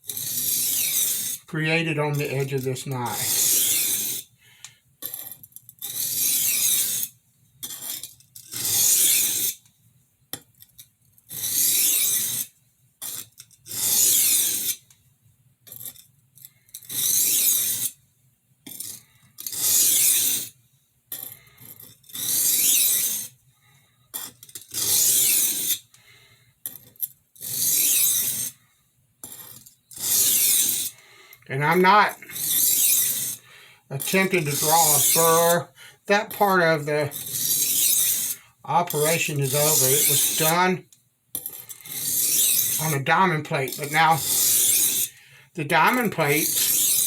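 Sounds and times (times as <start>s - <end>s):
knife scraping on sharpening stone: 0.0s - 1.4s, 2.1s - 4.2s, 5.0s - 9.6s, 11.3s - 14.8s, 16.8s - 17.9s, 18.7s - 20.5s, 21.2s - 23.4s, 24.2s - 25.8s, 26.7s - 28.6s, 29.2s - 31.0s, 31.7s - 33.4s, 34.0s - 35.6s, 36.2s - 40.7s, 41.4s - 43.1s, 43.7s - 45.2s, 46.0s - 47.0s.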